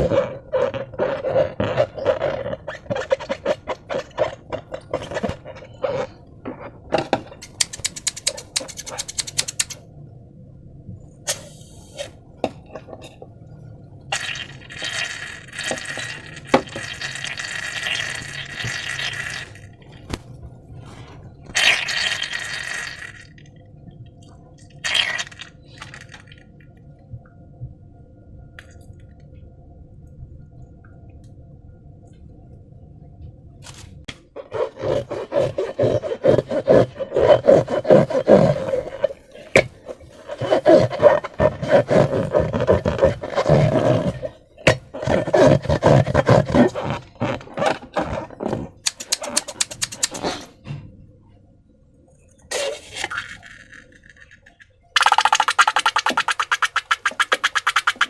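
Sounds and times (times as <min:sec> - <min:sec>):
wet scraping and squelching: 0:00.0 - 0:09.8, 0:24.8 - 0:26.4, 0:33.7 - 0:50.6, 0:52.5 - 0:58.0
crackling and clicking: 0:07.4 - 0:09.8.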